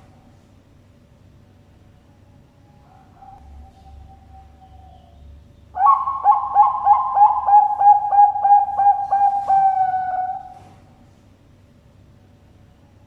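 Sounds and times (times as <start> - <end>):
dove cooing: 5.8 - 10.9.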